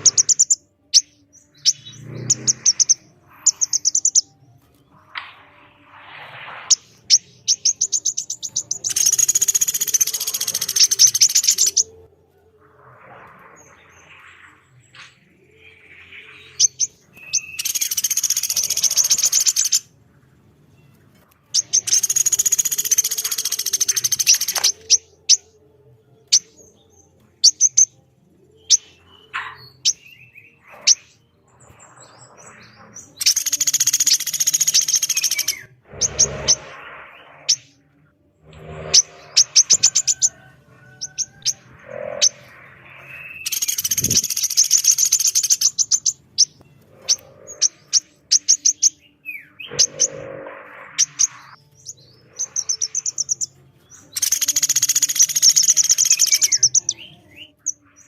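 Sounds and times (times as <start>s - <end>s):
sharp bird chip notes: 0.0s - 12.0s, 13.6s - 19.9s, 21.5s - 25.4s, 28.6s - 57.4s
woodpecker rattling trills: 7.9s - 11.8s, 21.6s - 25.0s, 33.2s - 35.6s, 54.2s - 56.9s.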